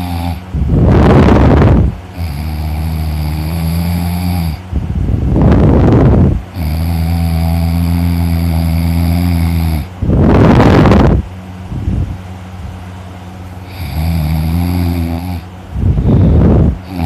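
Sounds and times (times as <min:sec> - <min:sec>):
person snoring: 0:00.0 - 0:04.6, 0:06.5 - 0:09.9, 0:13.6 - 0:17.0.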